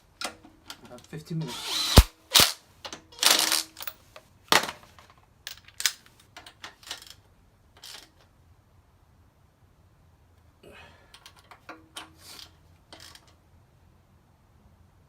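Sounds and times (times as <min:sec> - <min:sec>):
hand tools and metal parts clanking: 0:01.9 - 0:04.0.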